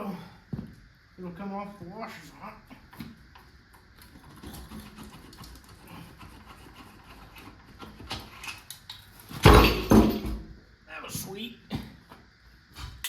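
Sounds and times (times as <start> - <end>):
loud thump: 9.4 - 10.5.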